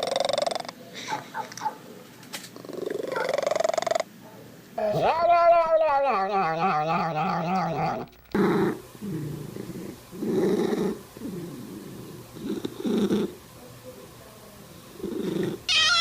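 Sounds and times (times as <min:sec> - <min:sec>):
cat low rumbling: 0:04.8 - 0:13.5, 0:14.9 - 0:16.0
cat yowling: 0:15.7 - 0:16.0.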